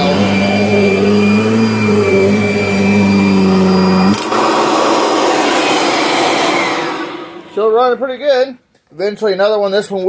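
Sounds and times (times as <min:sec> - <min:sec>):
vacuum cleaner motor hum: 0:00.0 - 0:07.9
rushing air: 0:04.2 - 0:08.2.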